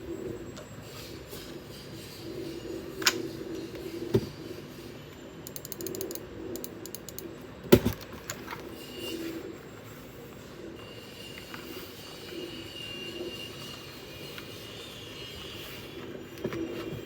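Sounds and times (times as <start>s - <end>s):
mechanical keyboard keystrokes: 5.5s - 7.2s.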